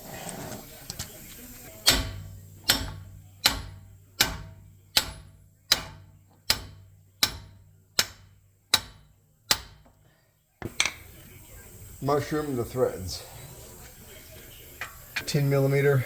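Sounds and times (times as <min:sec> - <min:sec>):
hammer blows on steel: 0:01.8 - 0:09.8.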